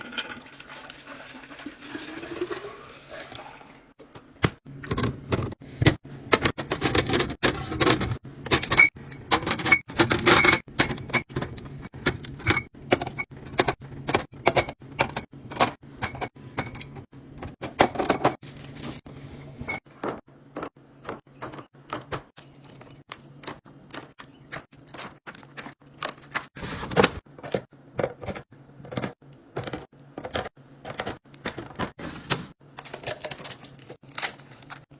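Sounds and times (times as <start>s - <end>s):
containers clicking and clinking: 32.7s - 34.8s.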